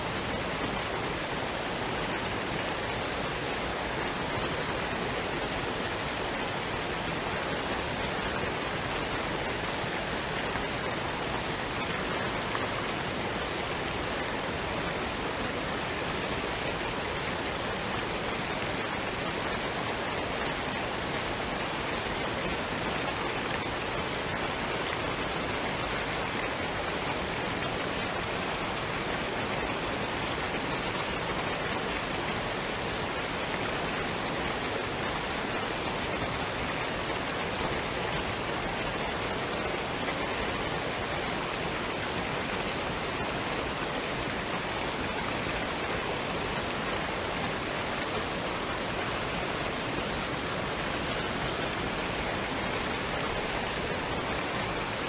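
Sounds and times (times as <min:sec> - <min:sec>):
waterfall and stream rushing: 0:00.0 - 0:55.0.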